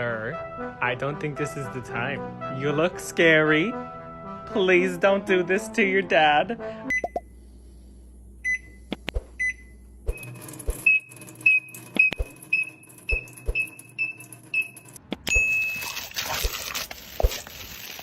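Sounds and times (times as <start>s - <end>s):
short electronic beeps: 9.4s - 16.0s.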